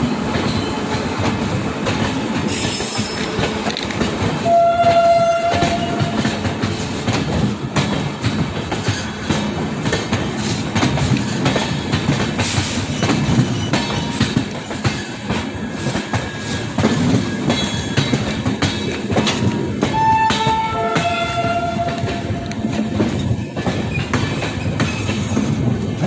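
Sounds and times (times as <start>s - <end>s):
train rumble: 0.0s - 26.0s
train wheels clicking on rails: 0.0s - 26.0s
train horn tone: 4.4s - 6.3s, 19.9s - 22.7s.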